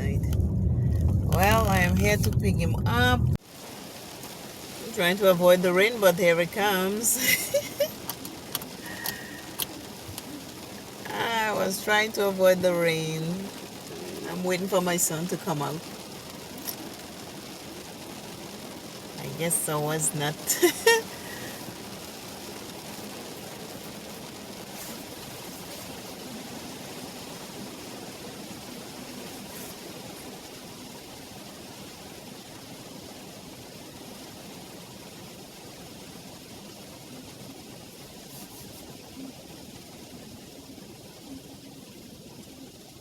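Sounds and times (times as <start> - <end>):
rain falling on a car: 0.0 - 43.0
raindrops ticking: 0.0 - 43.0.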